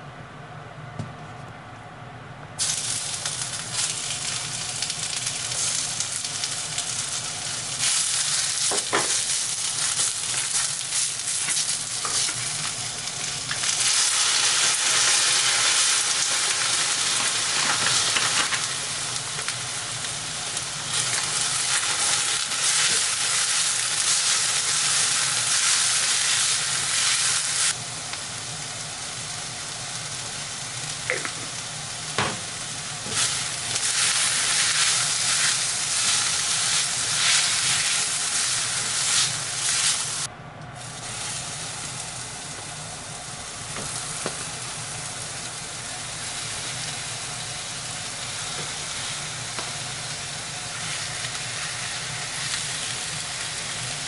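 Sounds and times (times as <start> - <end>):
patties sizzling in a pan: 2.6 - 54.0.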